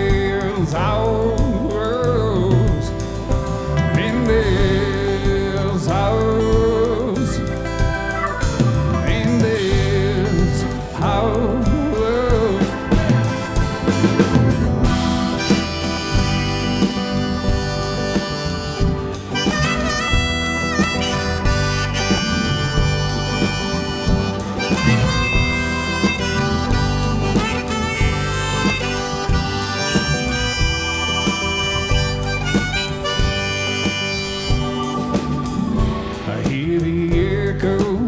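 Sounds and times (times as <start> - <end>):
live rock band playing: 0.0 - 38.0
harmonica soloing: 7.5 - 36.4.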